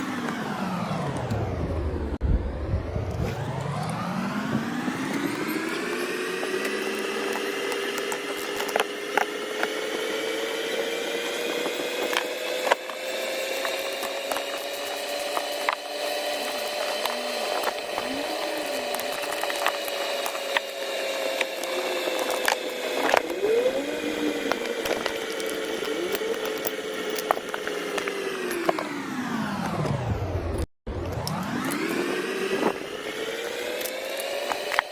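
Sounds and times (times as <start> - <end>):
electric power tool motor whine: 0.0 - 34.9.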